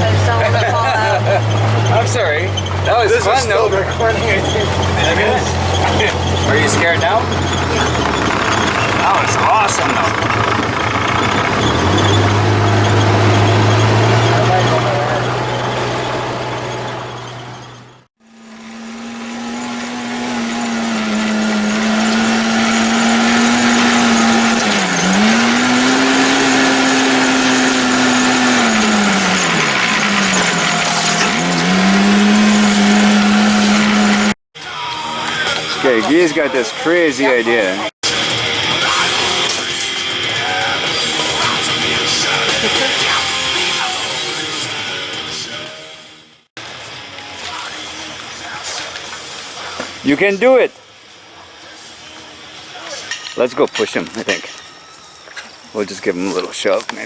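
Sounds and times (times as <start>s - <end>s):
small engine running at high revs: 0.0s - 34.4s
rock music with electric guitar: 37.4s - 50.1s.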